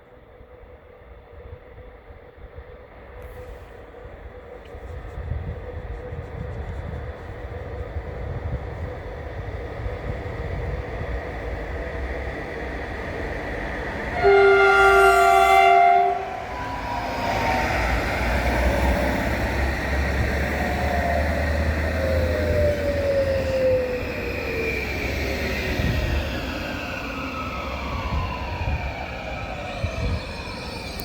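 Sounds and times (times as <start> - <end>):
train rumbling past: 0.0 - 31.0
train horn blast: 14.1 - 16.6.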